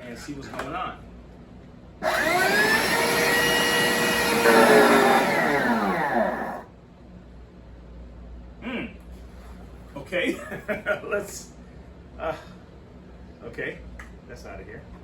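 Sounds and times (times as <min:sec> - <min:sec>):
carpet cleaner motor whine: 0:02.0 - 0:06.7.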